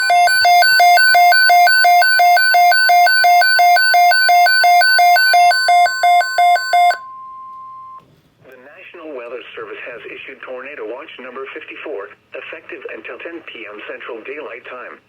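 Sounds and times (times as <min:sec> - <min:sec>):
hi-lo electronic alarm: 0:00.0 - 0:08.0.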